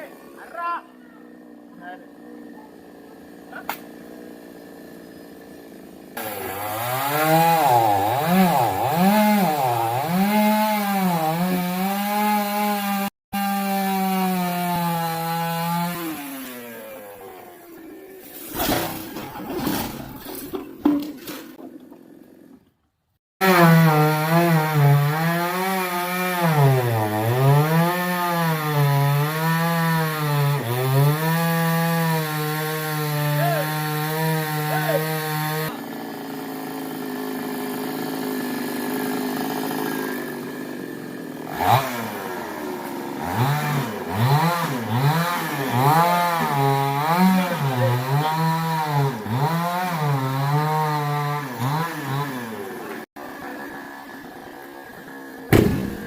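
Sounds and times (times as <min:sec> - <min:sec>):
chainsaw cutting wood: 0:01.2 - 0:22.8, 0:23.4 - 0:56.0.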